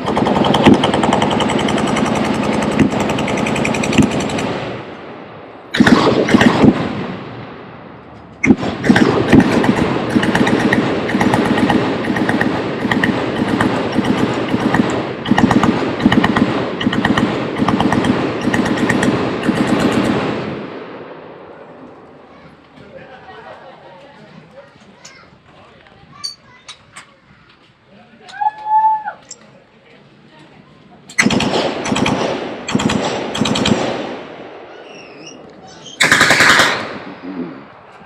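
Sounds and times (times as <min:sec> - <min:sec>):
automatic machine-gun fire: 0:00.0 - 0:04.8, 0:05.8 - 0:07.2, 0:08.4 - 0:20.6, 0:31.2 - 0:34.3, 0:36.0 - 0:37.1.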